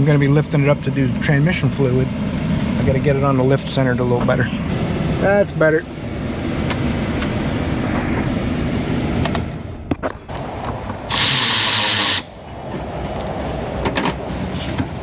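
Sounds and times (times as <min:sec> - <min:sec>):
loud burst of hiss: 0:11.1 - 0:12.3.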